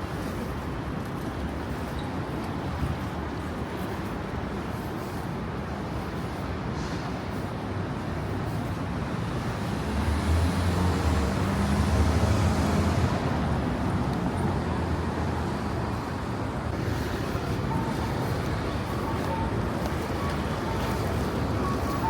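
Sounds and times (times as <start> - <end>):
road traffic noise: 0.0 - 22.0
vehicle engine hum passing: 9.3 - 22.0.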